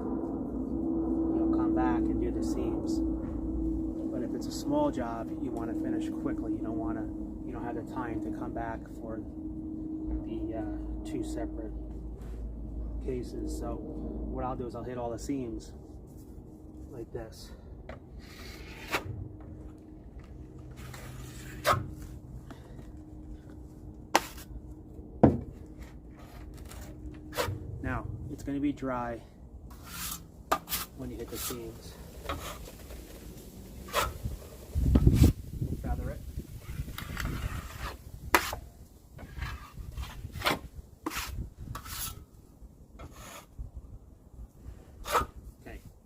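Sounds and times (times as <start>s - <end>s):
taping knife scraping compound: 18.1s - 19.2s, 20.2s - 22.2s, 24.1s - 24.5s, 25.7s - 27.6s, 29.7s - 33.2s, 33.8s - 34.3s, 36.6s - 42.2s, 43.0s - 43.6s, 45.0s - 45.4s
sharp knocks: 25.2s - 25.6s.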